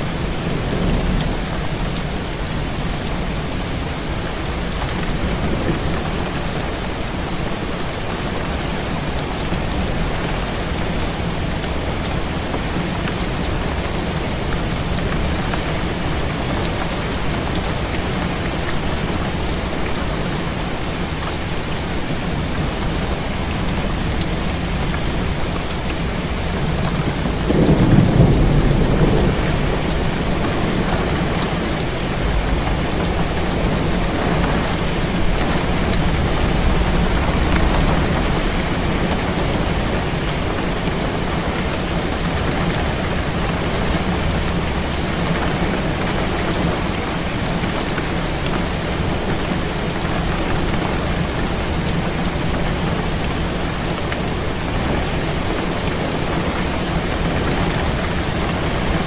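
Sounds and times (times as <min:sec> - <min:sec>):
heavy rain on a window: 0:00.0 - 0:59.0
thunder rumble: 0:25.2 - 0:40.5.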